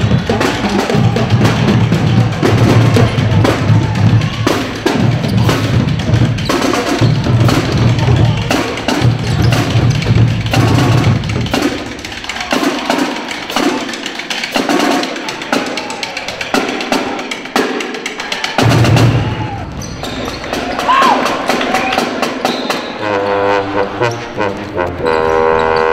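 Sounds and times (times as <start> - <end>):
heavy bass beat: 0.0 - 19.8
drums and light percussion: 0.0 - 23.3.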